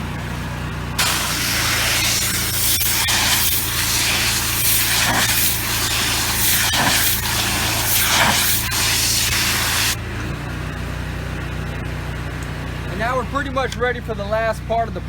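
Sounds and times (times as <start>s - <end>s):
engine humming: 0.0s - 13.4s
pressure washer spraying water: 1.0s - 10.0s.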